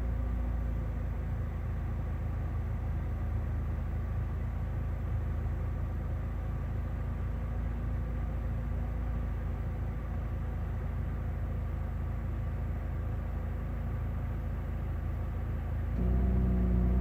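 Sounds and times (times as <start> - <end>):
car engine idling: 15.5 - 17.0
faint whining tones: 16.0 - 17.0.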